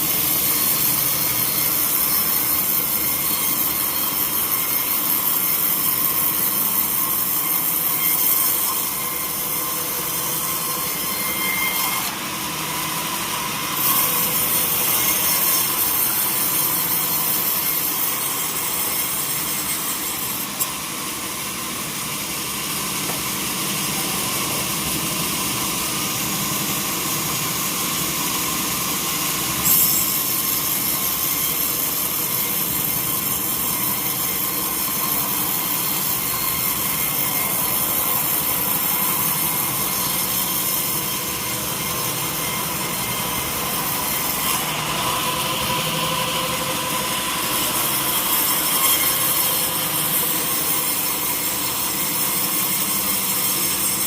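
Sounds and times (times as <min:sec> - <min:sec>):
saw blade cutting log: 0:00.0 - 0:20.9, 0:28.9 - 0:54.0.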